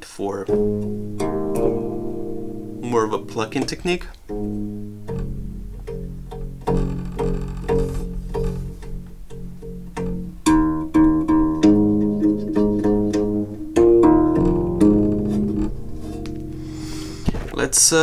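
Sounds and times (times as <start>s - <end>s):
harp strings plucked: 0.5s - 18.0s.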